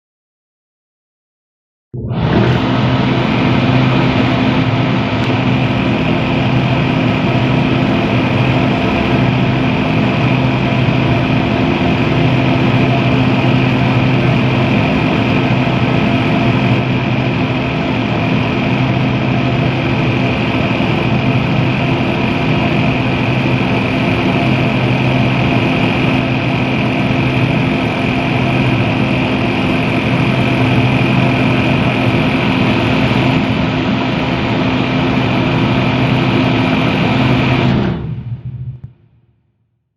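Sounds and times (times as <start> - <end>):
exhaust fan humming: 2.0 - 39.0
faint high whine: 2.0 - 39.1.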